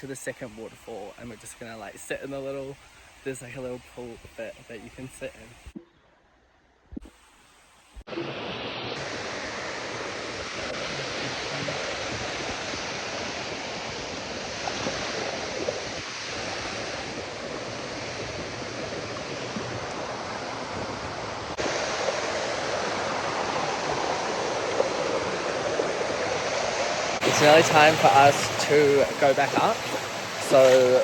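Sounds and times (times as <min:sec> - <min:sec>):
waterfall rushing: 0:08.1 - 0:31.0.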